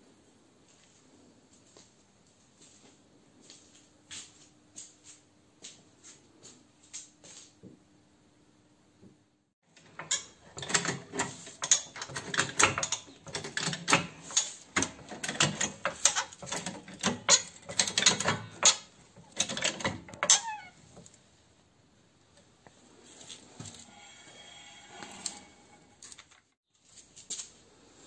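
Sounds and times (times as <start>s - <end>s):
hand tools and metal parts clattering: 9.7s - 21.1s, 23.0s - 27.5s.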